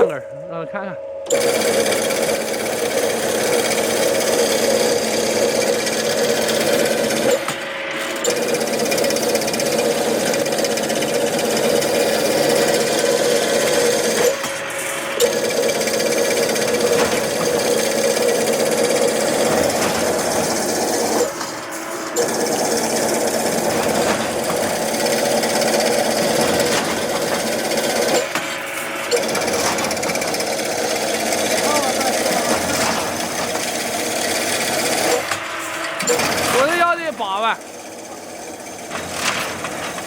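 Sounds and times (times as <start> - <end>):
wire crimping machine clatter: 1.3 - 35.4, 36.0 - 40.0
machine knock: 15.2 - 21.6, 22.2 - 35.4.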